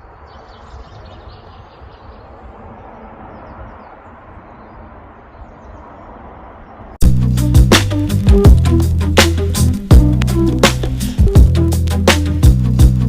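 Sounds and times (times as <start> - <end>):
small birds chirping: 0.0 - 7.0.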